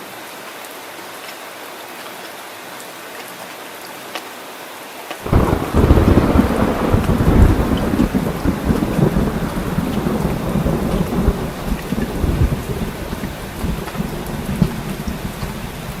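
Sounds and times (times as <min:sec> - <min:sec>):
heavy rain pouring: 0:00.0 - 0:16.0
thunder rumbling: 0:05.3 - 0:16.0.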